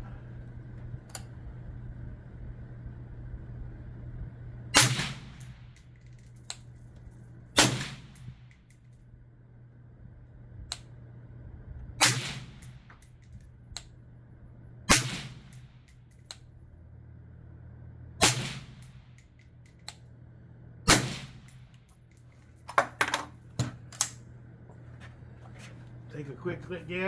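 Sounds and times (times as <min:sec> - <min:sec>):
suppressed rifle shots: 0:04.8 - 0:05.5, 0:07.6 - 0:08.3, 0:12.0 - 0:12.7, 0:14.9 - 0:15.6, 0:18.2 - 0:18.9, 0:20.9 - 0:21.6.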